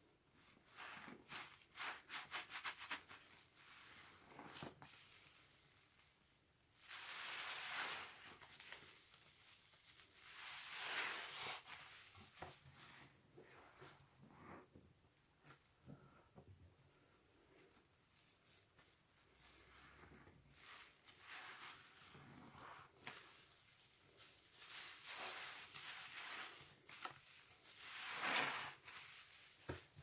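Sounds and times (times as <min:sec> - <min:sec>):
soapy sponge squelching: 0:06.8 - 0:14.6, 0:19.2 - 0:23.4, 0:24.0 - 0:30.0.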